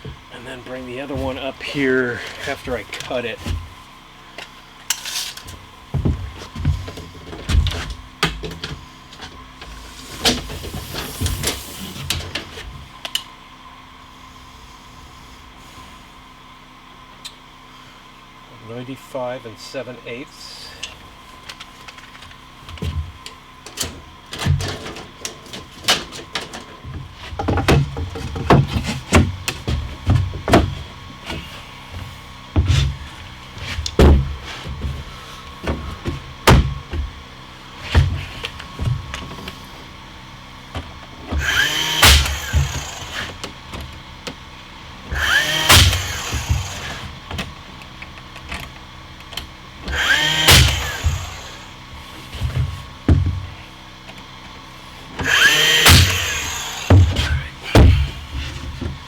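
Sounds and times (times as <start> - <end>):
wooden boards thudding: 27.0 - 33.0, 33.6 - 35.0, 35.6 - 37.2, 40.8 - 43.5, 45.1 - 47.1, 49.8 - 51.7, 55.2 - 59.0
power tool motor bursts: 41.3 - 44.1, 45.0 - 47.2, 49.8 - 52.0, 55.1 - 58.4.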